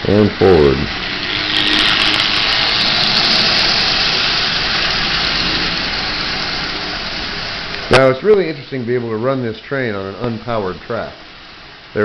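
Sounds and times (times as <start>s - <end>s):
toy train motor whirring: 0.0s - 8.2s
toy train wheels rumbling on rails: 0.0s - 11.6s.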